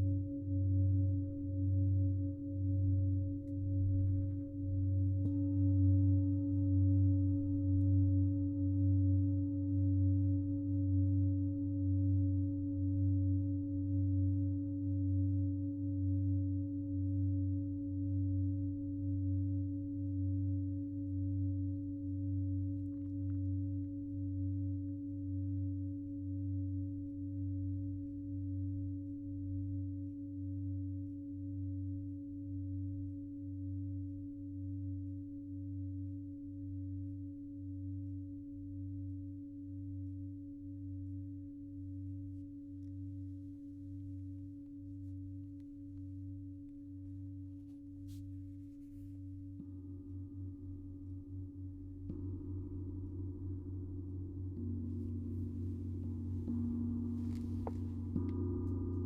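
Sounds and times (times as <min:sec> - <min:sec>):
low pulsing hum: 0:00.0 - 0:59.0
singing bowl ringing: 0:52.1 - 0:59.0
faint tap: 0:57.3 - 0:58.4.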